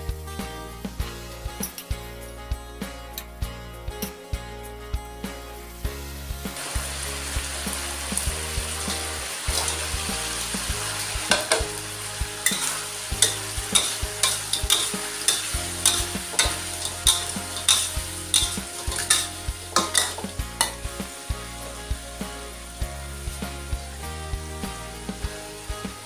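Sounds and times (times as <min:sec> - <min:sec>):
oil sizzling in a pan: 0:04.0 - 0:26.0
spatula scraping a pan: 0:06.6 - 0:23.7.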